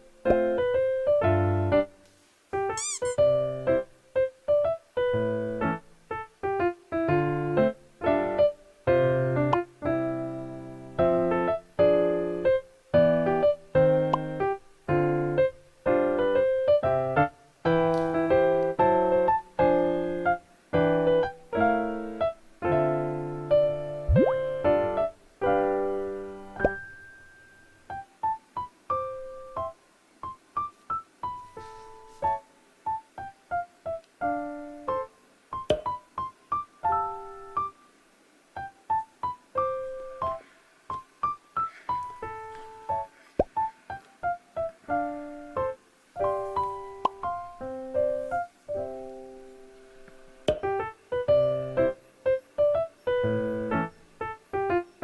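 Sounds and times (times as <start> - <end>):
bouncy electric piano tune: 2.7 - 27.0, 50.1 - 55.0.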